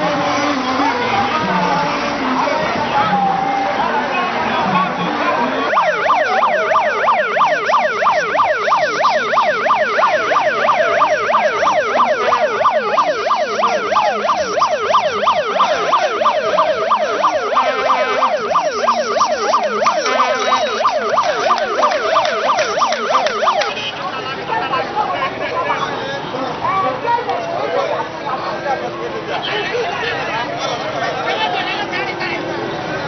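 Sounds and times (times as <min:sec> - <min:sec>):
electronic siren yelping: 0:00.0 - 0:04.0, 0:05.4 - 0:23.9.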